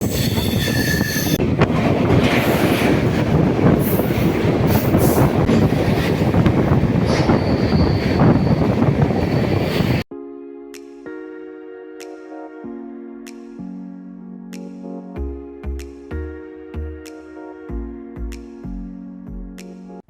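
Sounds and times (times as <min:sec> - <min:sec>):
high squeal: 0:00.0 - 0:01.4, 0:07.0 - 0:10.0
train rumbling on track: 0:00.0 - 0:10.1
soft music: 0:10.1 - 0:20.0.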